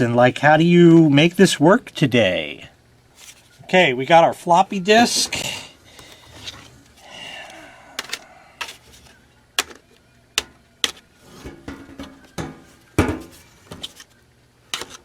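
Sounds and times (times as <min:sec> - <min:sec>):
clicks and knocks of small objects: 0:08.0 - 0:12.5.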